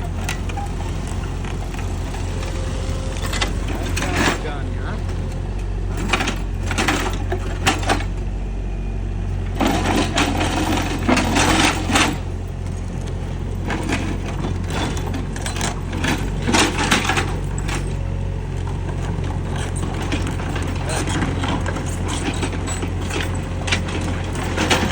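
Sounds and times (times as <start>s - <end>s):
metallic clanking and rattling: 0.0s - 8.2s, 9.5s - 24.9s
excavator diesel engine running: 0.0s - 24.9s.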